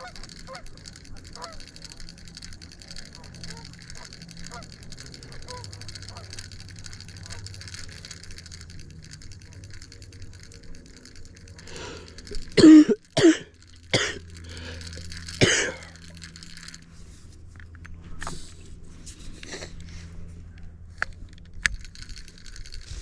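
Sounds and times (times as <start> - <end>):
faint clicks: 0.0 - 12.6
person coughing hard: 12.6 - 14.2, 15.4 - 15.9.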